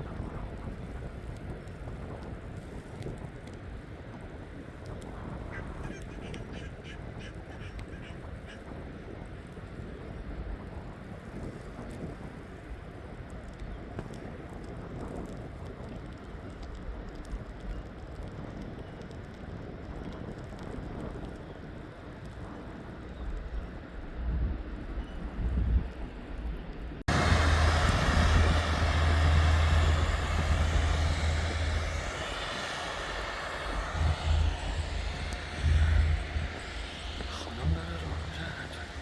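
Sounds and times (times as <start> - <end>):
low city street rumble: 26.2 - 39.0.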